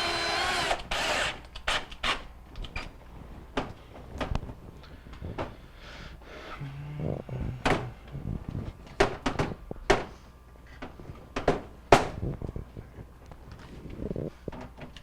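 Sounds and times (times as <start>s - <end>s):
knocks and clunks of microwave: 9.0s - 10.2s, 11.4s - 12.2s.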